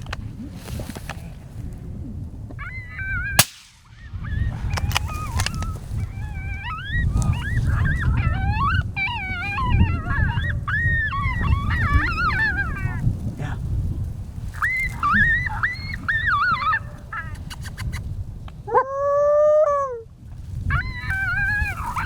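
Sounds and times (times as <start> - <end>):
coyotes howling and yipping: 0.2 - 22.0
sharp crack: 3.4 - 5.7.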